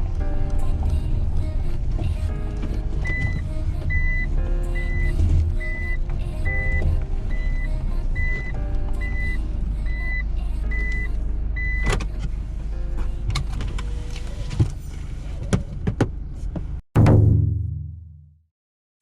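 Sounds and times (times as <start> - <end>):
vehicle running: 0.0 - 16.8
reversing warning beeps: 3.0 - 11.9.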